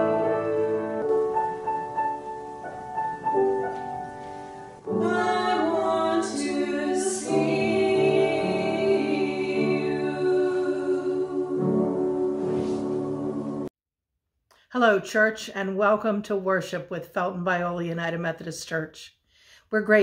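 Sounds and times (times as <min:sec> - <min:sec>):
music with singing voices: 0:00.0 - 0:13.7.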